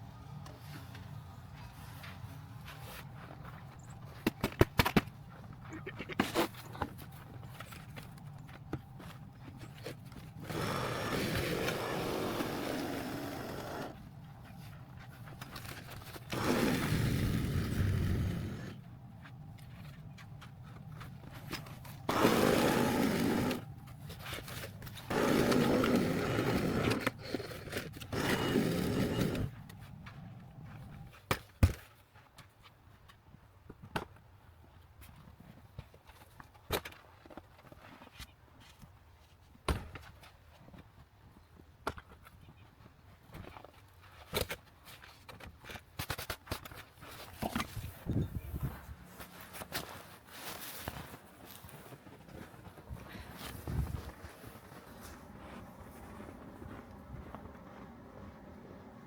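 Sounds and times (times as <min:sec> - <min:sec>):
snow shovel scraping pavement: 0:09.8 - 0:18.8, 0:21.0 - 0:29.6, 0:49.1 - 0:59.0.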